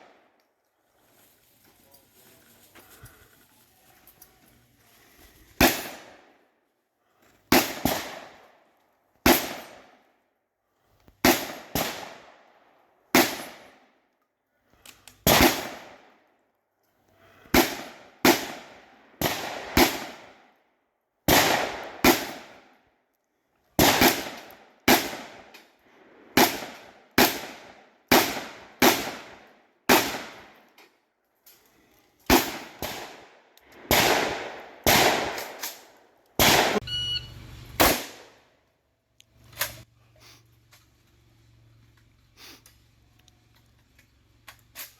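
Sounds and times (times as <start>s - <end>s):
shotgun shots with echo: 15.3s - 16.0s, 17.5s - 20.3s, 21.3s - 22.5s, 26.4s - 30.5s, 32.3s - 35.7s, 36.4s - 36.8s, 37.8s - 38.4s.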